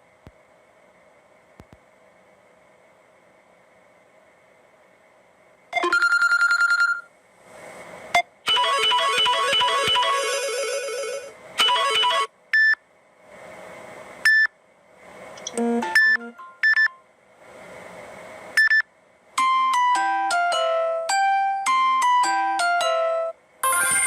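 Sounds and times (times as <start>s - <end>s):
melodic electronic ringtone: 5.8s - 7.1s, 8.5s - 12.3s, 19.7s - 24.0s
short ringtone snippets and beeps: 5.8s - 7.1s, 23.6s - 24.0s.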